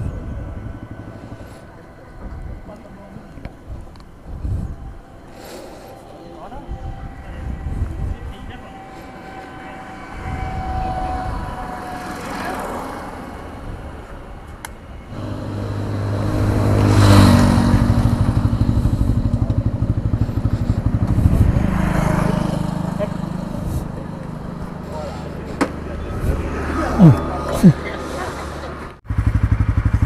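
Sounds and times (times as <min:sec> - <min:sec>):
vehicles passing: 0:00.0 - 0:30.0
motorcycle engine running: 0:15.1 - 0:26.4, 0:29.0 - 0:30.0.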